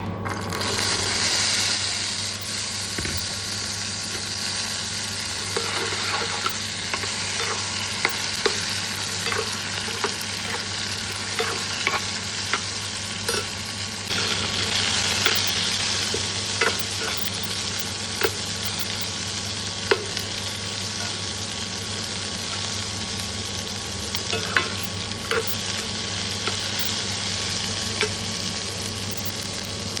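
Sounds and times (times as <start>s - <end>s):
chickpeas sizzling in a pan: 0.1s - 30.0s
spatula scraping a pan: 5.4s - 6.5s.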